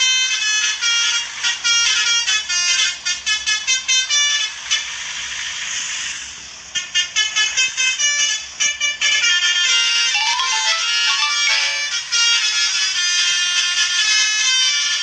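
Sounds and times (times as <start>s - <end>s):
multi-tone horn melody: 10.2s - 12.1s.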